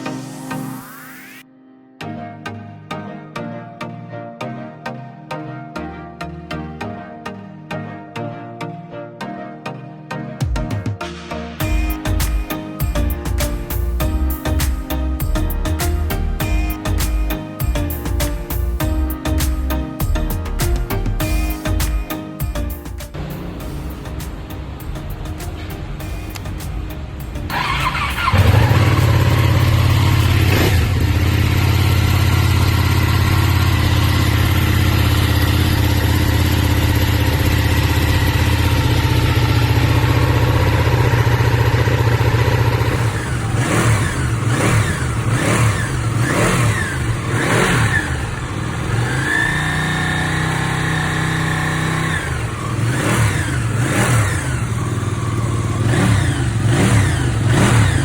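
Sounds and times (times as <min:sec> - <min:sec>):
motorcycle engine revving: 0:25.8 - 0:58.0.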